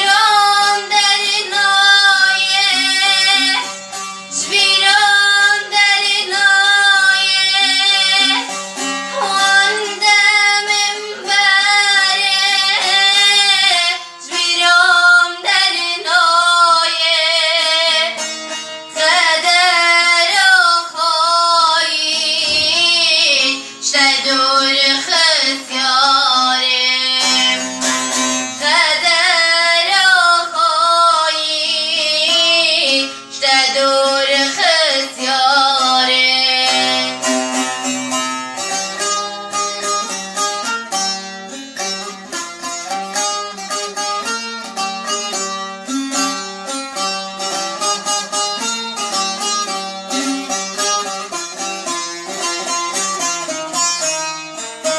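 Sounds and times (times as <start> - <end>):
woman singing: 0.0 - 3.7, 4.3 - 18.3, 18.9 - 27.7, 28.6 - 37.4
instrumental accompaniment: 0.0 - 54.9.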